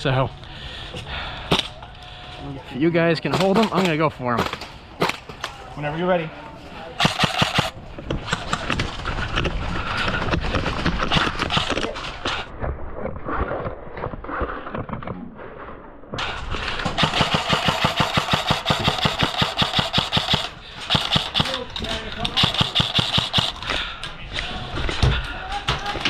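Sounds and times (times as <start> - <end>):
airsoft rifle firing rapidly: 7.0 - 8.8, 10.6 - 12.0, 16.9 - 23.6.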